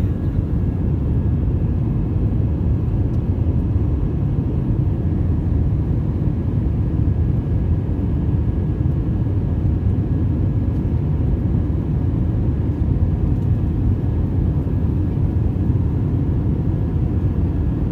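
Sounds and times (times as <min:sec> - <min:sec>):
jet engines and airflow rumble: 0:00.0 - 0:17.9.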